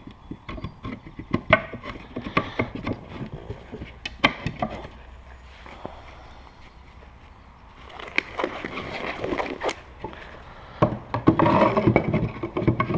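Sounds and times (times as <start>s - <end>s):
wooden knocks and clatters: 0.0s - 5.0s, 10.8s - 12.9s.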